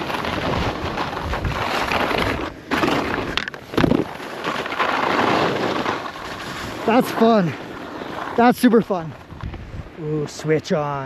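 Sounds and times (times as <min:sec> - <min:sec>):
wind buffeting microphone: 0:00.0 - 0:04.2, 0:06.1 - 0:10.4
skis scraping over snow: 0:00.0 - 0:11.0.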